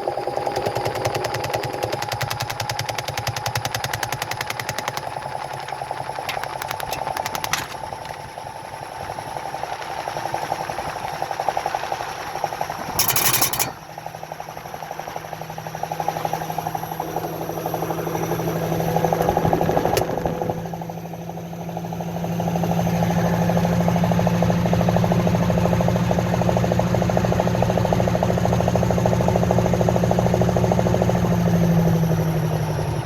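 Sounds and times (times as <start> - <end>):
washing machine spinning: 0.0 - 11.8, 12.4 - 14.0.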